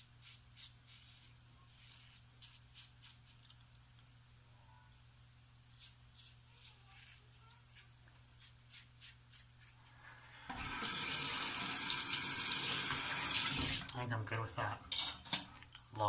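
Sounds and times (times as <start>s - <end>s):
faint scratchy strokes: 0.0s - 3.5s, 5.7s - 10.5s
water running into sink: 10.5s - 14.0s.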